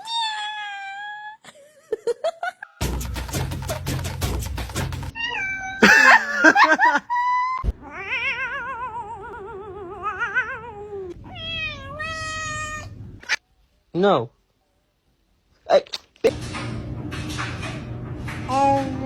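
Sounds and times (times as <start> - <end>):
cat meowing and yowling: 0.0 - 1.4, 5.1 - 5.8, 7.3 - 12.9.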